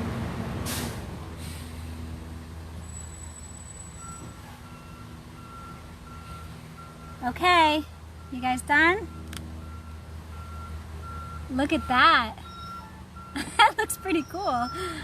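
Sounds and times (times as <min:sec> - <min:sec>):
truck engine running: 0:00.0 - 0:15.0
reversing beeper: 0:02.8 - 0:07.4, 0:08.2 - 0:15.0.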